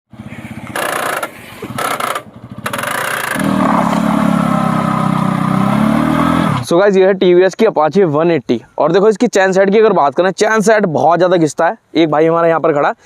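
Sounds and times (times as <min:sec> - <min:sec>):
motorcycle engine running: 0:00.1 - 0:06.7.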